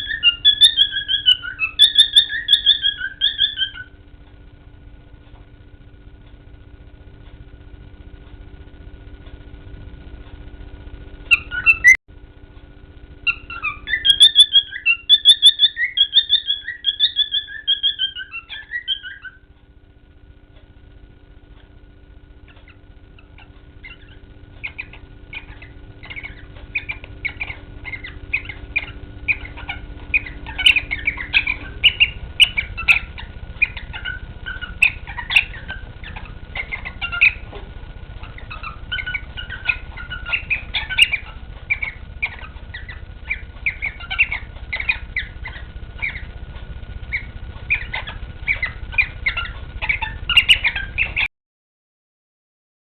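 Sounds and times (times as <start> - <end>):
cockatiel chirping whistles: 0.0 - 3.9, 11.3 - 12.0, 13.2 - 19.4, 22.6 - 37.4, 38.2 - 46.3, 47.1 - 51.2
cockatiel chirps and squawks: 0.0 - 3.9, 11.3 - 12.0, 13.2 - 19.4, 22.5 - 37.5, 38.2 - 46.3, 47.1 - 51.3.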